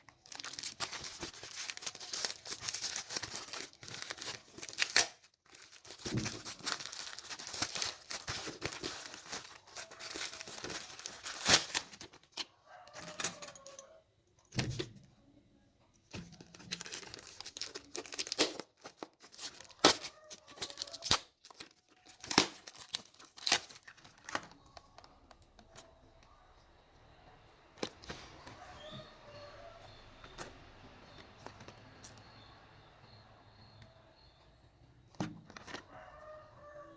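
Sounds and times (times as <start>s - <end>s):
packaging rustling and tearing: 0.0s - 13.3s, 16.2s - 25.9s
packaging snapping: 0.0s - 13.6s, 16.1s - 26.2s.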